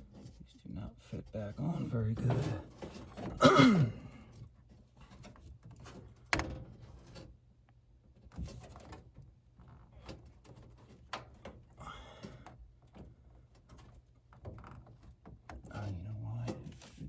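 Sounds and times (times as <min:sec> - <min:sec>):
furnace parts clicking and knocking: 0:01.8 - 0:17.0.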